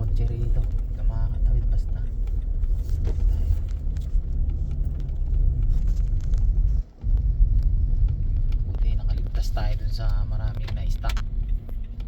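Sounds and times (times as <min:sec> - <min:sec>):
car driving through snow rumble: 0:00.0 - 0:12.0.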